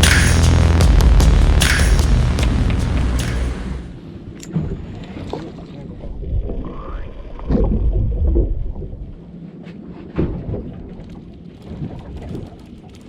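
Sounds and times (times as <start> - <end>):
knocks and thuds: 0.0 - 4.0.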